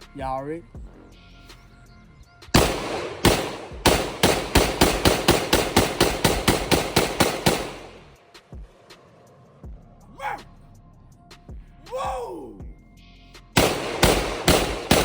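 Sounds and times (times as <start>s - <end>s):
gunfire echo: 2.6s - 8.2s, 13.6s - 15.0s
rifle shots: 2.6s - 8.2s, 13.6s - 15.0s.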